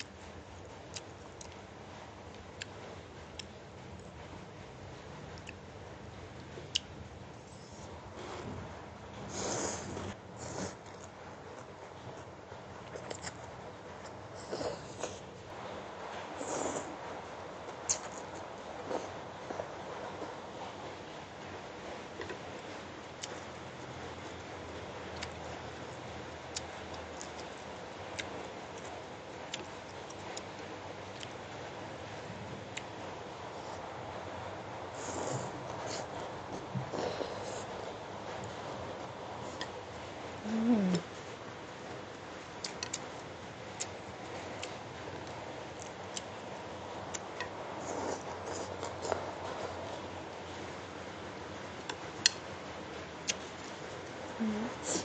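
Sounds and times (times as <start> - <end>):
steady background hiss: 0.0 - 55.0
slurping and chewing: 6.7 - 12.2, 17.6 - 20.5, 34.9 - 38.7, 47.1 - 50.0.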